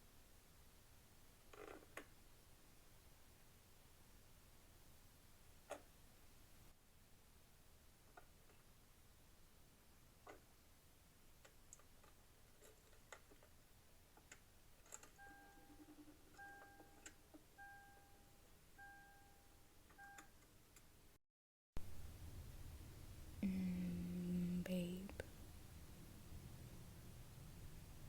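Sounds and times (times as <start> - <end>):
faint clicks and ticks: 10.0 - 10.6, 11.2 - 17.5
car warning chime beeping: 17.6 - 20.3.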